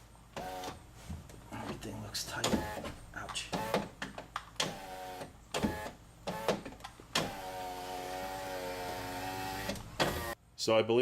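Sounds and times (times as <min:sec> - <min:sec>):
power window motor running: 0:00.4 - 0:00.8, 0:04.6 - 0:10.4.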